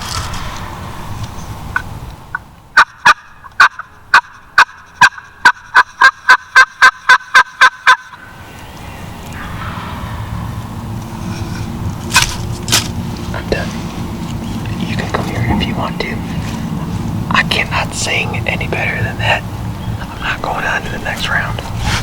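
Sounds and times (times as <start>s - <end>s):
soft turkey call clucks: 2.8s - 8.2s
turkey call yelping: 2.8s - 8.3s.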